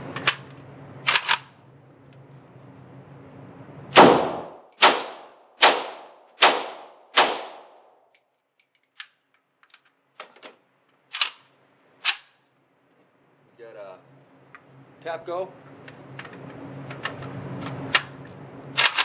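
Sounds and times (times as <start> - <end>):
rifle shots echoing: 4.0 - 7.9.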